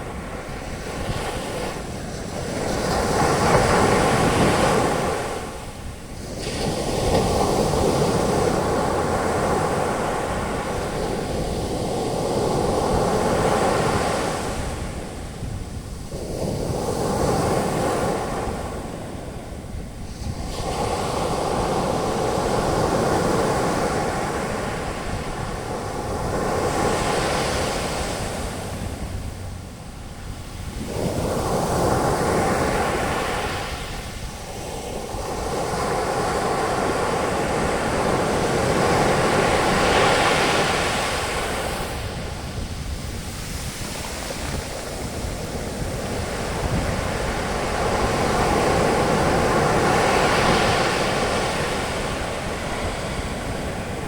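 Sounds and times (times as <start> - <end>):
waves breaking on beach: 0.0 - 54.0.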